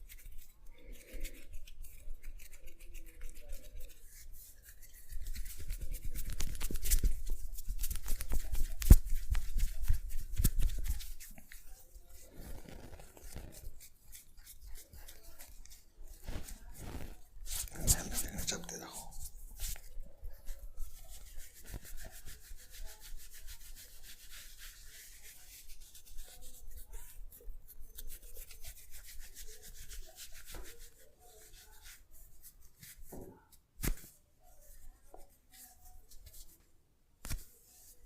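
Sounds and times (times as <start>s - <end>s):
hands scrubbing hair and skin: 0.0s - 33.1s.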